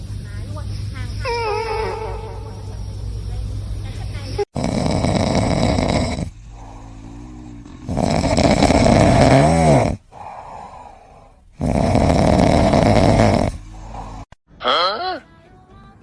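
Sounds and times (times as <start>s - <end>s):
pet snoring: 4.4s - 14.4s.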